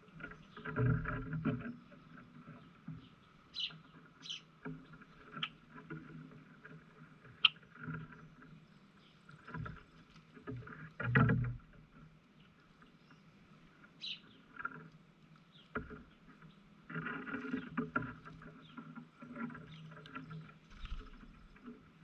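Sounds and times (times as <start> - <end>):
high bird chirps: 3.6 - 4.4, 14.0 - 14.3.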